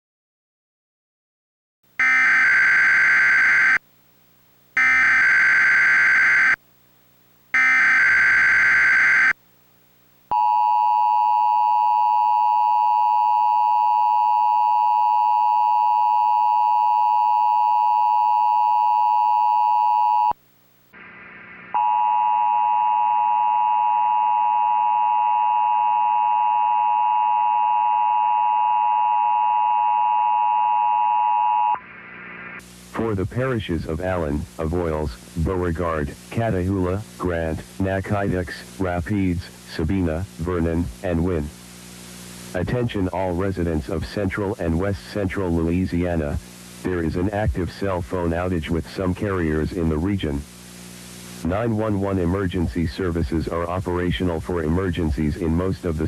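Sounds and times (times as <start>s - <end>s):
screechy data header tones: 2.0s - 3.8s, 4.8s - 6.6s, 7.6s - 9.4s.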